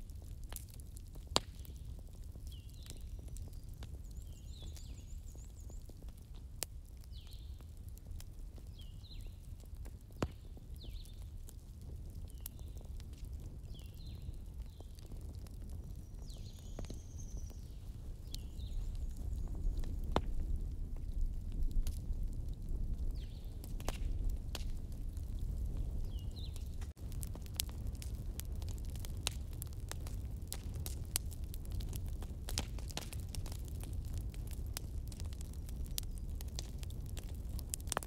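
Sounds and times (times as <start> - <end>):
fire crackling and popping: 0.0 - 38.0
small birds chirping: 1.6 - 6.2, 7.0 - 7.7, 8.6 - 9.5, 10.2 - 11.3, 12.2 - 13.0, 13.6 - 15.0, 15.8 - 20.1, 25.8 - 26.8.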